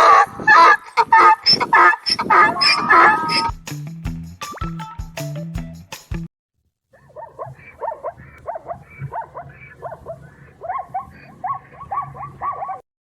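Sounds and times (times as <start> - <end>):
zebra barking yelps: 0.0 - 3.5, 7.0 - 12.8.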